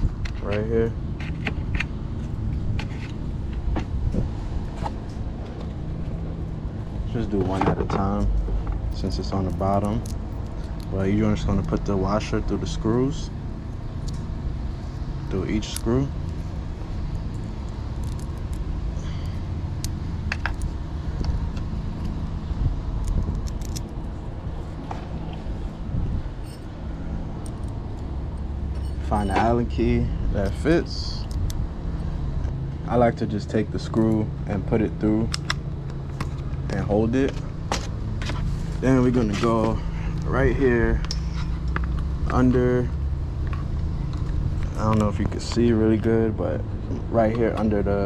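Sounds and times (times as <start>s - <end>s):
background traffic rumble: 0.0s - 48.0s
steady low hum: 0.0s - 48.0s
small screws clicking: 17.6s - 21.4s, 23.0s - 24.0s
metal screws and washers clinking: 18.0s - 18.6s, 26.4s - 26.8s, 28.7s - 29.7s.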